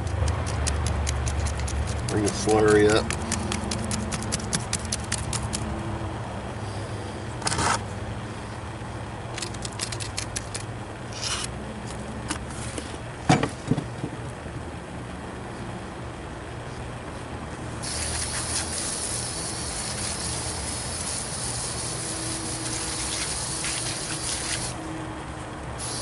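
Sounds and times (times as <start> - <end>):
rapid tapping on wet refractory: 0.0 - 5.6.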